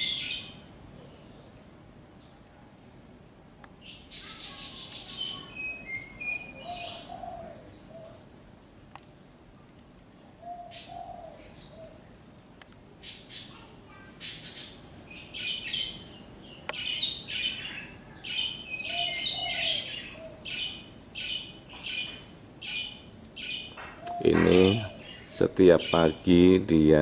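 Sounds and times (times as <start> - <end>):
small birds chirping: 0.0 - 12.2, 13.0 - 27.0
dove cooing: 6.2 - 8.2, 10.4 - 12.0, 18.8 - 23.0, 24.0 - 26.3.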